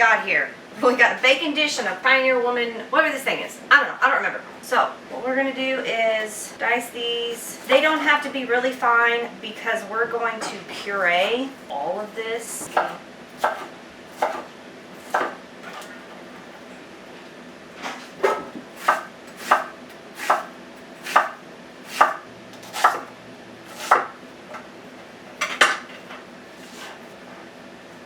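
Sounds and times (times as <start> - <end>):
kitchen knife chopping food: 12.6 - 15.4, 18.2 - 23.1, 23.7 - 24.2.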